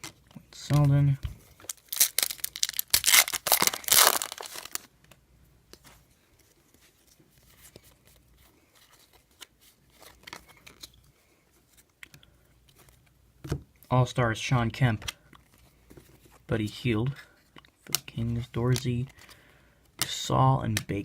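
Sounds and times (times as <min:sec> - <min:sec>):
cards clicking and rustling: 0:00.0 - 0:04.9, 0:06.7 - 0:11.0, 0:17.5 - 0:19.4
wrapper tearing and crinkling: 0:01.6 - 0:04.9.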